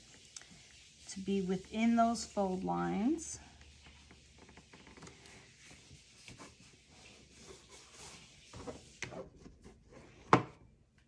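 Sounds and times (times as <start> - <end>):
paper rustling and folding: 3.6 - 10.3.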